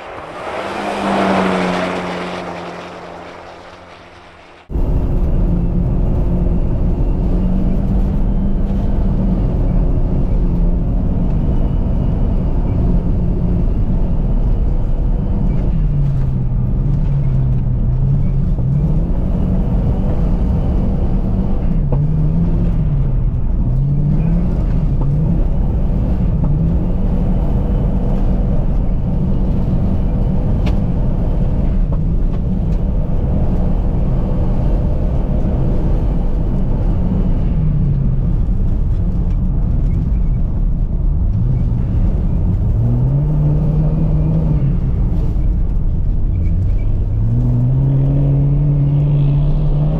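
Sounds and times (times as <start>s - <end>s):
car engine revving: 0.0s - 16.3s, 41.2s - 49.9s.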